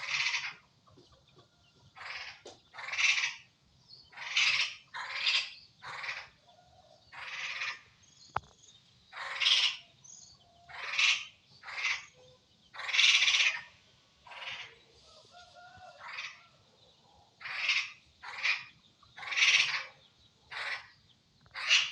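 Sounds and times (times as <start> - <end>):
animal harsh rasping calls: 0.0 - 0.6, 2.0 - 3.4, 4.1 - 6.4, 9.1 - 9.8, 10.7 - 14.8, 17.4 - 20.9, 21.5 - 21.9.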